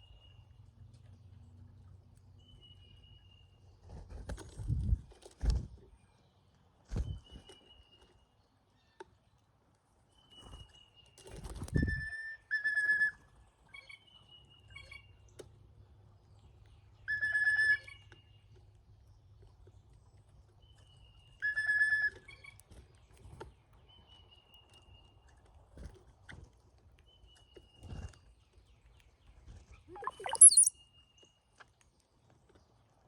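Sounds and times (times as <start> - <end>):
birds whistling: 29.9 - 30.7
short bird notes: 29.9 - 30.7.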